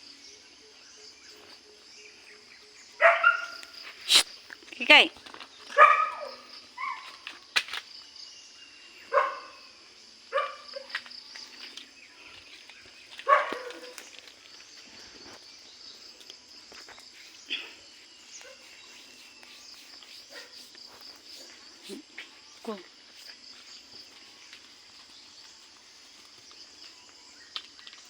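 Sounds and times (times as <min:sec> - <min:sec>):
dog barking: 0:03.0 - 0:03.6, 0:05.8 - 0:07.1, 0:09.1 - 0:09.6, 0:10.3 - 0:10.9, 0:13.2 - 0:14.0.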